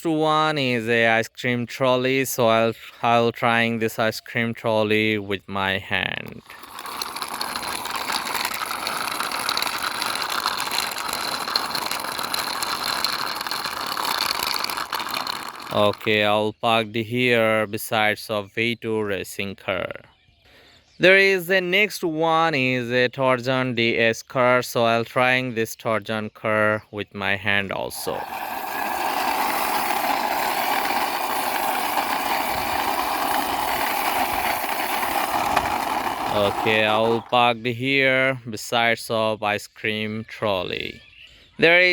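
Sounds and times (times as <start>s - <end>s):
plastic wheels rolling rattle: 6.0s - 16.4s, 27.9s - 37.5s, 41.6s - 41.9s.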